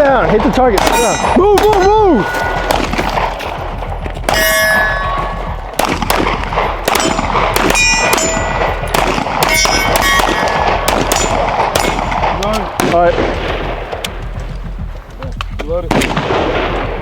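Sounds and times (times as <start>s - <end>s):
gunshots: 0.0s - 17.0s
steel targets clanging: 0.8s - 3.6s, 4.3s - 5.7s, 6.9s - 12.6s.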